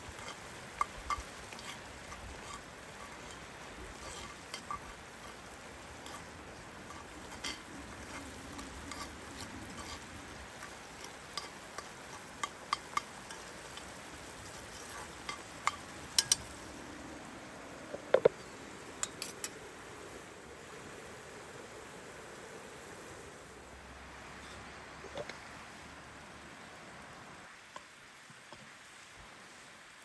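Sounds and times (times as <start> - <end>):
soft steady hiss: 0.0 - 30.0
utensils clinking on cookware: 10.6 - 16.5.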